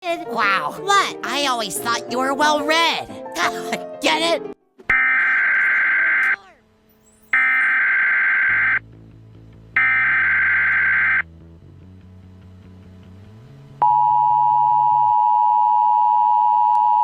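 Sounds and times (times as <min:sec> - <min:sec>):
screechy digital data tones: 0:05.0 - 0:06.4, 0:07.0 - 0:08.8.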